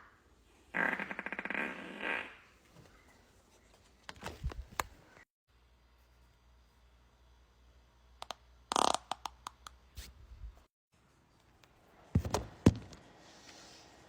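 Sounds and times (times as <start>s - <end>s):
person farting: 0.7s - 2.5s, 8.7s - 9.3s.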